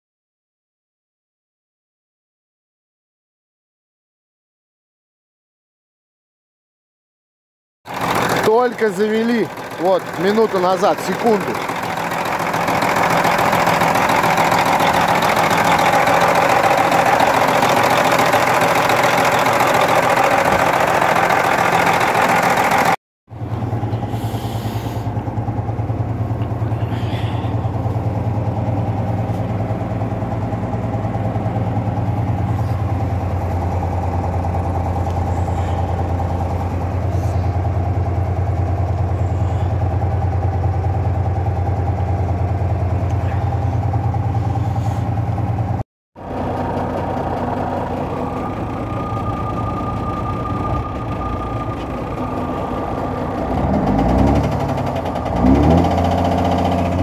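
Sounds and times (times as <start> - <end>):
diesel truck engine idling: 7.9 - 57.0
thin steady whine: 47.5 - 53.5.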